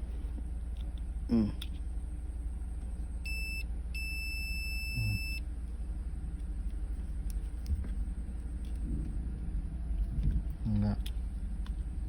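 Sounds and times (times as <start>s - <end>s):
multimeter continuity beep: 3.2s - 5.4s
low rumble: 5.0s - 12.0s.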